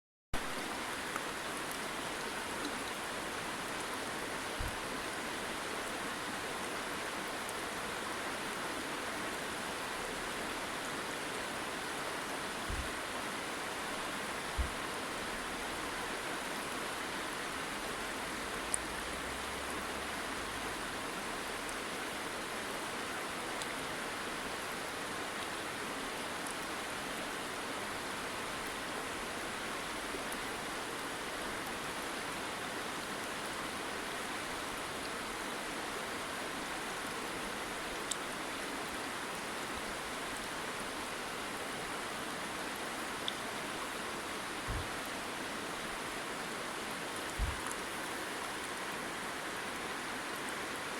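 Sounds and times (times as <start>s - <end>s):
running water rushing: 0.4s - 50.9s
faint low thumps: 44.7s - 44.9s, 47.4s - 47.6s.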